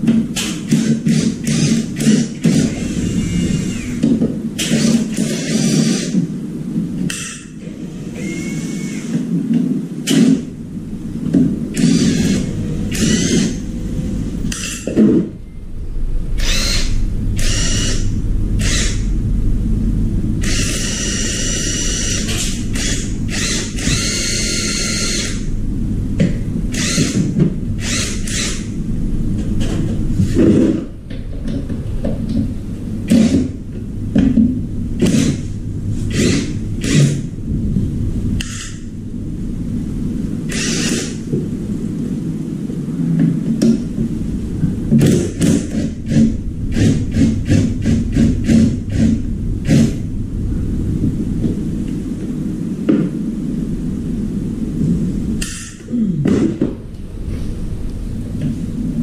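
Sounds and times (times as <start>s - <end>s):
low rumble: 0.0s - 4.6s, 5.4s - 59.0s
power drill motor whining: 0.7s - 6.2s, 8.0s - 9.2s, 11.8s - 13.6s, 16.4s - 19.1s, 20.4s - 25.5s, 26.7s - 28.7s, 40.5s - 41.2s.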